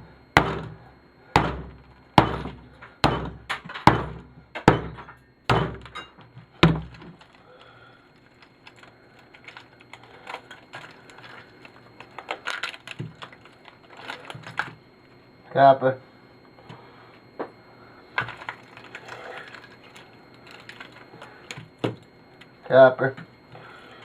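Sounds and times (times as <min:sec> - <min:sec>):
hammer striking metal parts: 0:01.4 - 0:07.0.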